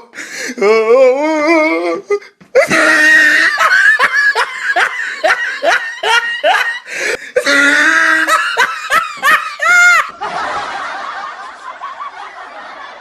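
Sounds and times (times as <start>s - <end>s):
background noise: 0.0s - 13.0s
loud laughter with whoop: 2.6s - 13.0s.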